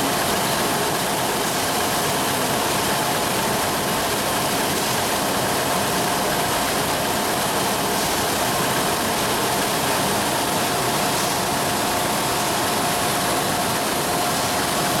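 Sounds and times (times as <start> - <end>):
labeling machine running: 0.0 - 15.0
steady machine hum: 0.0 - 15.0.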